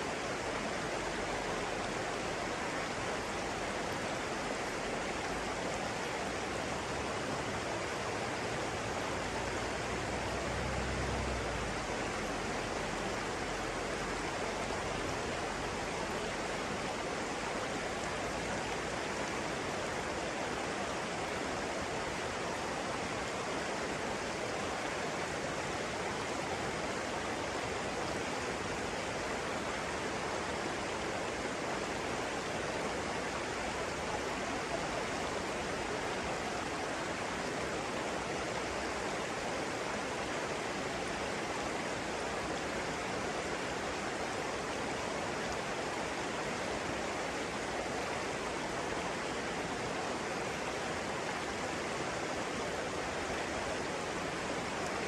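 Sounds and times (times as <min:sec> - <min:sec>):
running water: 0:00.0 - 0:55.0.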